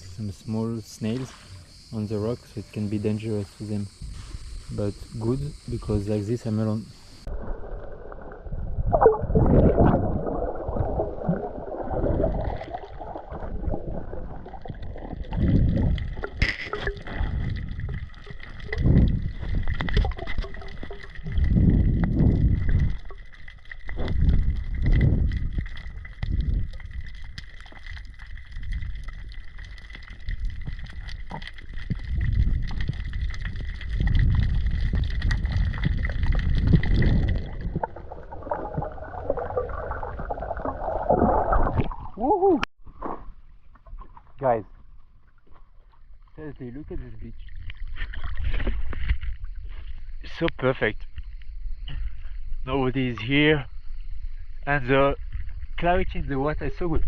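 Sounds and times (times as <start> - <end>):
seawater sloshing and gurgling: 7.1 - 50.2.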